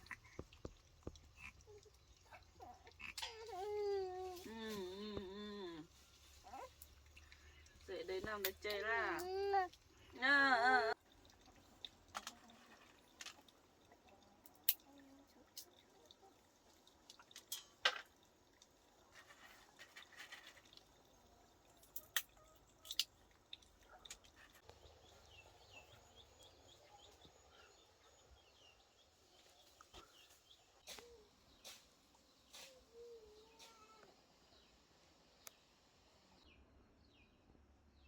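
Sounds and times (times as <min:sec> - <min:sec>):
water drips: 0:00.0 - 0:27.2.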